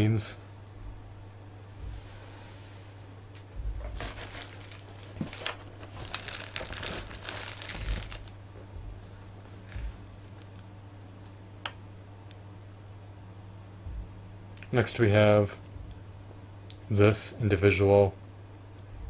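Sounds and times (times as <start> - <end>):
packaging crinkling: 3.8 - 8.4, 9.4 - 10.8.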